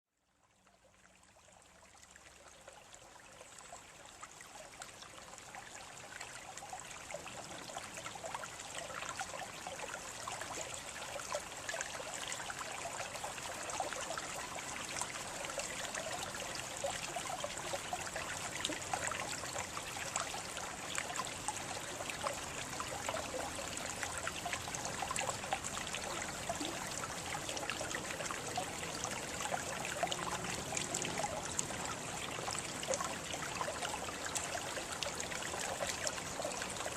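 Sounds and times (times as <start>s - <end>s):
water trickling and babbling: 0.1s - 36.9s.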